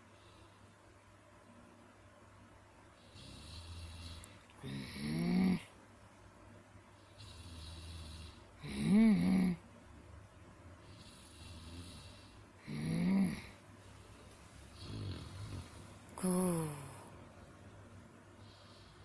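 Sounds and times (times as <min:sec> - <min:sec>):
person snoring: 0:03.1 - 0:05.7, 0:07.2 - 0:09.6, 0:10.9 - 0:13.6, 0:14.8 - 0:17.1
soft breathing: 0:10.8 - 0:17.5, 0:18.2 - 0:19.0.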